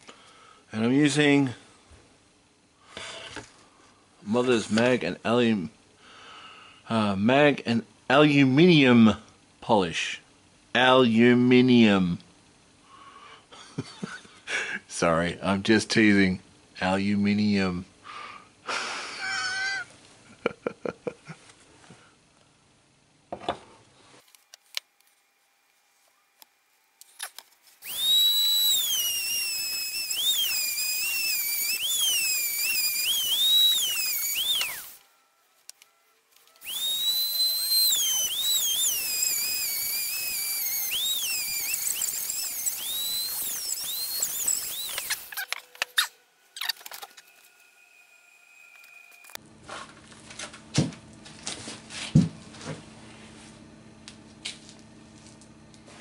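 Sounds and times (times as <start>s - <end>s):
polishing tool whining: 27.7s - 49.4s.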